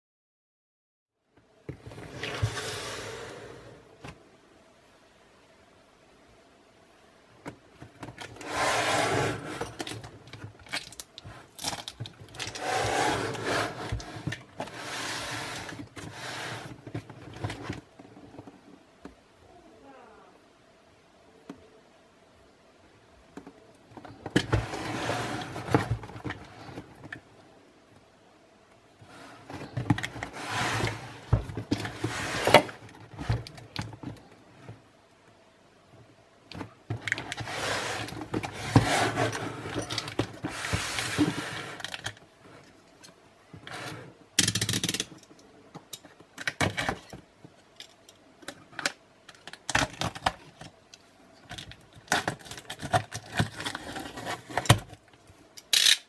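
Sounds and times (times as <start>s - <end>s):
packaging rustling and scraping: 8.0s - 18.5s, 29.3s - 34.2s, 36.9s - 42.7s, 51.5s - 55.0s.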